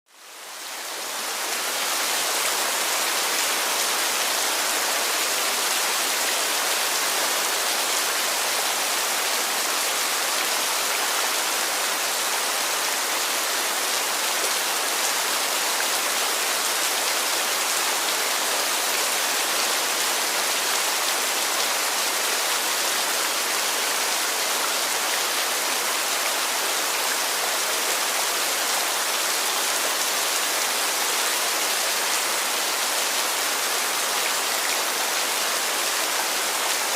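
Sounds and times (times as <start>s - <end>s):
heavy rain falling: 0.1s - 36.9s.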